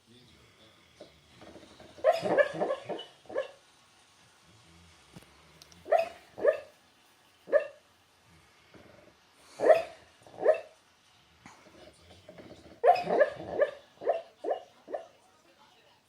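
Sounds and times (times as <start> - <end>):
dog hiccuping: 2.0 - 3.6, 12.8 - 15.1.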